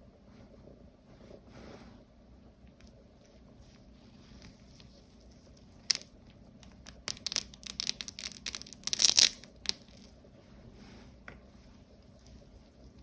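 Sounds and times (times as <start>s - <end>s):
small cracks and clicks: 5.6s - 10.1s
plastic snapping: 5.9s - 9.8s.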